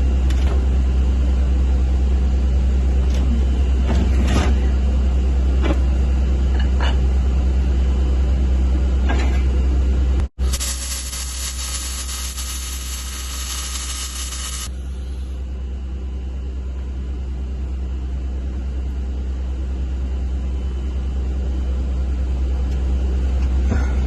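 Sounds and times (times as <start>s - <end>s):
welder electrical hum: 0.0s - 24.0s
welding arc hissing and crackling: 10.4s - 14.7s.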